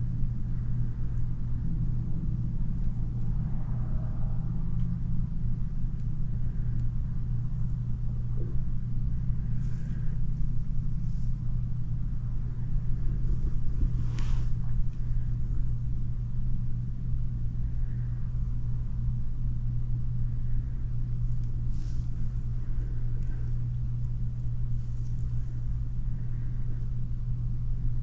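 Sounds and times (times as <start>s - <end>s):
low electrical hum: 0.0s - 28.0s
faint light scratches: 13.2s - 15.3s, 21.7s - 25.8s.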